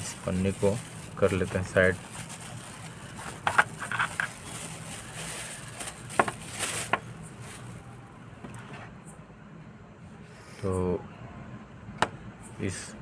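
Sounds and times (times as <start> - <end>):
plastic wrapping crinkling: 0.0 - 8.0.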